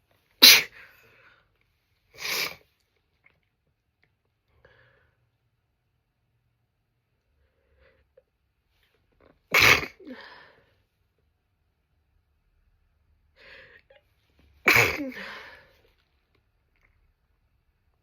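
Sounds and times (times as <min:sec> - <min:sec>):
woman sneezing: 0:00.4 - 0:00.9, 0:09.5 - 0:10.4, 0:14.6 - 0:15.8.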